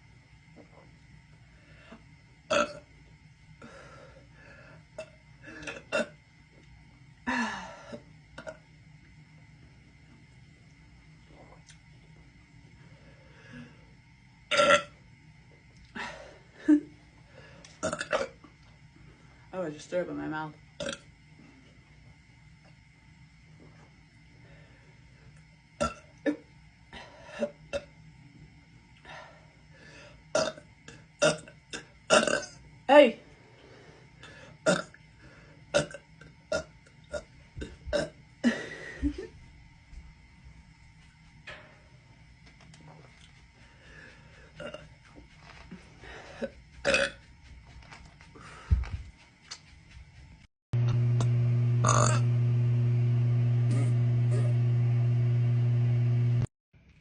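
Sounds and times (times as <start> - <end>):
woman burping: 2.5 - 2.8, 5.0 - 6.2, 14.5 - 15.0, 17.8 - 18.4, 20.8 - 21.0, 30.4 - 30.6, 31.2 - 32.6, 34.7 - 35.0, 37.9 - 39.2, 46.4 - 47.2, 51.8 - 52.3.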